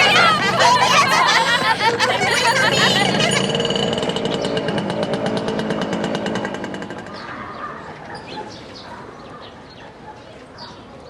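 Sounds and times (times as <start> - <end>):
small engine chugging: 0.0 - 7.8.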